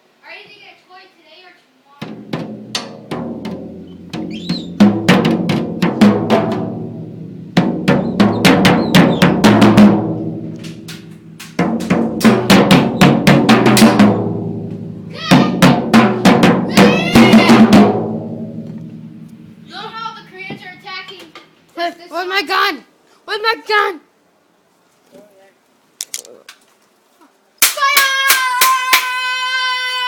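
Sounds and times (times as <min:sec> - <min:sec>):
snare and bass drum hits: 0:02.0 - 0:19.8.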